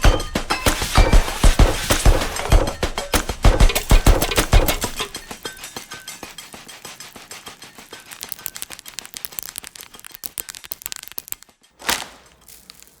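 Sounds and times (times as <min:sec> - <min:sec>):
cereal crackling in milk: 0:03.2 - 0:13.0.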